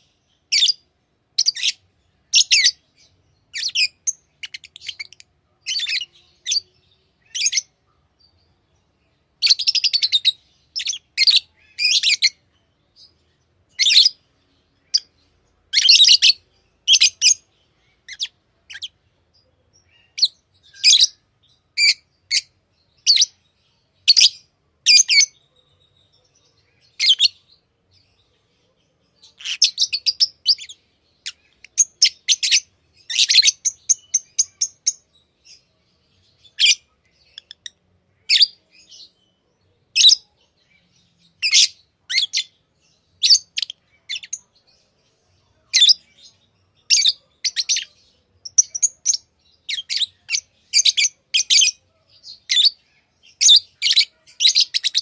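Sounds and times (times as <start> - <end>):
lovebirds chirping: 0.0 - 55.0.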